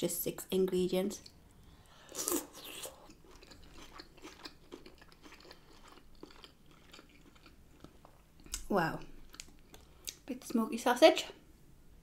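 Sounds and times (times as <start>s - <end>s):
person chewing food: 1.2s - 10.2s.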